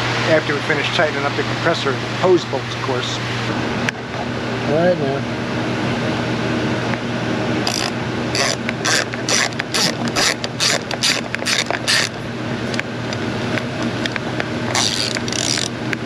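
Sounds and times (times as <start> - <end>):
steady hum: 0.0 - 16.0
hand ratchet clicking: 7.6 - 12.2, 14.7 - 15.7.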